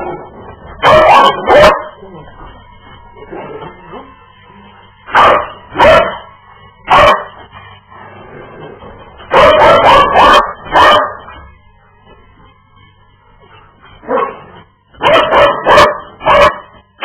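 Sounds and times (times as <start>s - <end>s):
dog barking: 0.8s - 2.0s, 5.1s - 6.3s, 6.9s - 7.4s, 9.3s - 11.2s, 14.1s - 16.8s.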